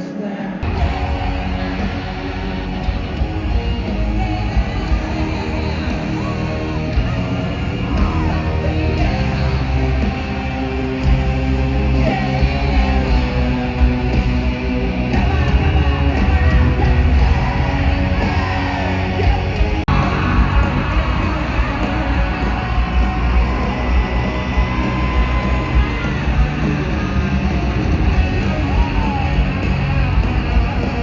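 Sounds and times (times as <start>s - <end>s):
electric guitar: 0.0s - 31.0s
loud rock music: 0.0s - 31.0s
shouted vocals: 0.0s - 31.0s.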